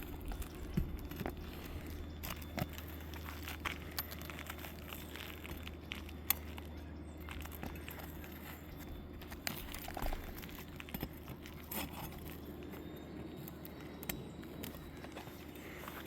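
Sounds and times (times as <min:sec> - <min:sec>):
steady low hum: 0:00.0 - 0:16.0
hand tools scraping roof shingles: 0:07.3 - 0:16.0.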